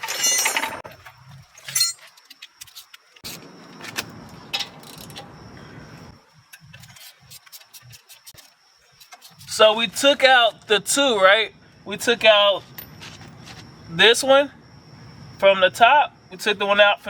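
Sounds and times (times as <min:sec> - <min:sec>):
metal tools clinking: 0:00.0 - 0:05.3, 0:12.6 - 0:13.6.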